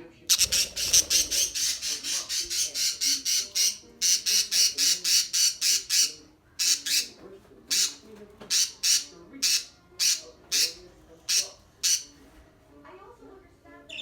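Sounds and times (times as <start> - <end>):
budgerigars squawking: 0.3 - 7.1.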